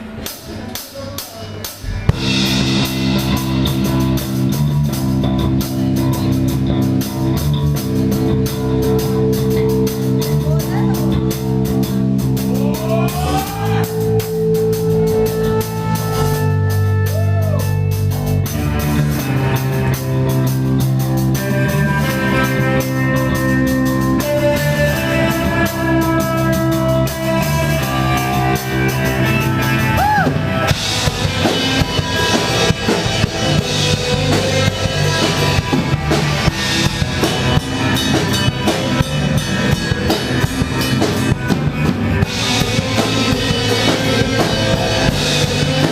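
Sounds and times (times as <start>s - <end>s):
rock band playing: 0.0s - 45.9s.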